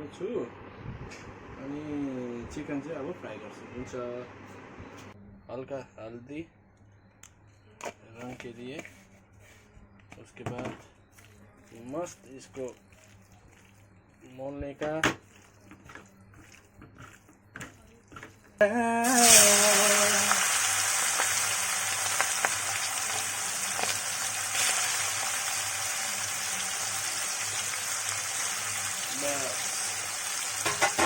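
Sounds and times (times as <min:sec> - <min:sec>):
chicken frying in hot oil: 0:19.0 - 0:31.0.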